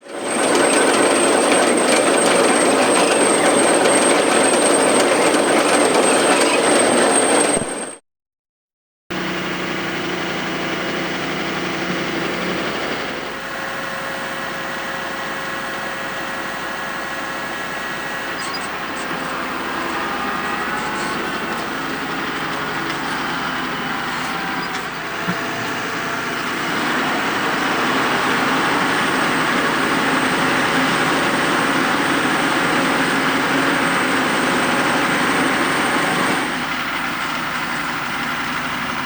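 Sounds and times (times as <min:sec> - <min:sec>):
harvester machinery clattering: 0:00.0 - 0:08.0, 0:09.4 - 0:39.0
tractor engine hum: 0:00.0 - 0:08.0, 0:09.2 - 0:39.0.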